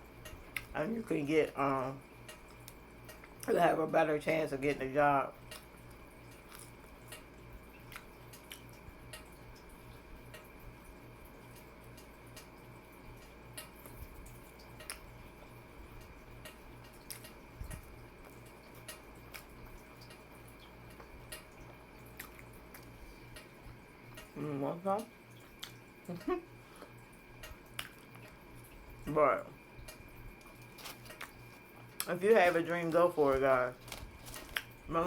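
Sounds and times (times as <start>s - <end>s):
steady hum: 0.0s - 35.0s
person chewing food: 2.2s - 3.5s, 5.4s - 10.5s, 13.1s - 24.5s, 25.4s - 29.0s, 29.8s - 35.0s.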